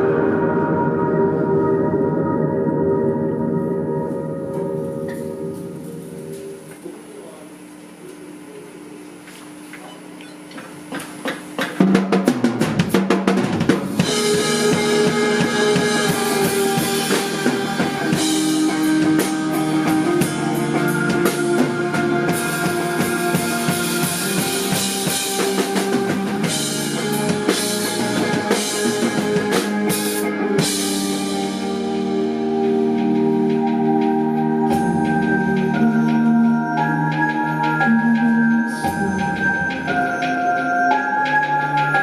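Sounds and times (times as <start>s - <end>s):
live rock band playing: 0.0s - 6.7s, 11.8s - 42.0s
held organ-like chords: 0.0s - 8.6s, 13.9s - 42.0s
drum fill: 11.1s - 36.4s.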